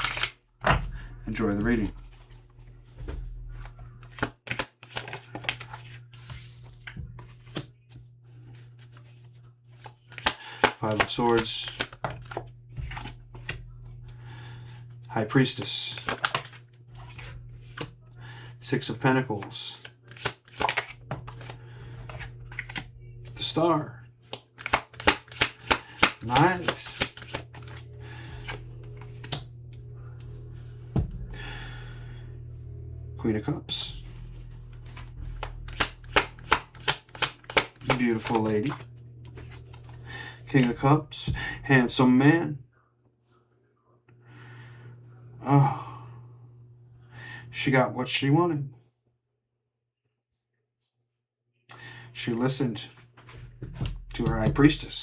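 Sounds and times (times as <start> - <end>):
cards snapping and tapping: 0.0 - 0.3, 4.0 - 6.0, 9.8 - 13.6, 15.8 - 17.9, 19.4 - 22.9, 24.2 - 27.8, 34.9 - 40.0
low hum: 0.0 - 4.2, 11.0 - 24.4, 26.2 - 43.4, 44.1 - 47.6
cards rustling: 0.0 - 13.6, 14.6 - 29.5, 33.8 - 40.8.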